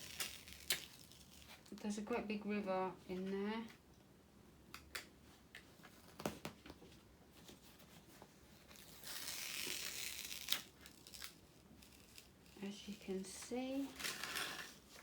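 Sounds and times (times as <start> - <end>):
plastic film peeling: 0.0 - 2.1, 7.5 - 15.0.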